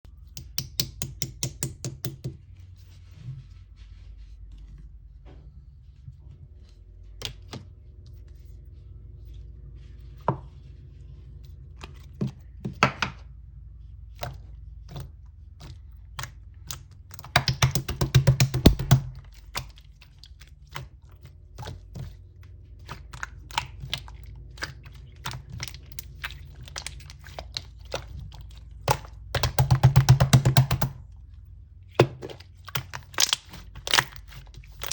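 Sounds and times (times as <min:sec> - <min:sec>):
low steady hum: 0:00.1 - 0:34.9
slime clicking and popping: 0:16.1 - 0:20.8, 0:28.8 - 0:31.0, 0:32.0 - 0:34.9.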